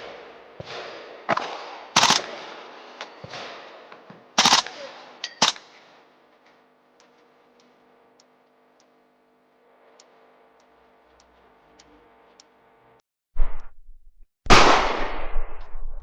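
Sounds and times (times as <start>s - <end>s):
gunshots with rolling echo: 0.0s - 5.8s, 14.5s - 16.0s
rapid gunfire bursts: 0.7s - 3.7s, 4.4s - 5.7s.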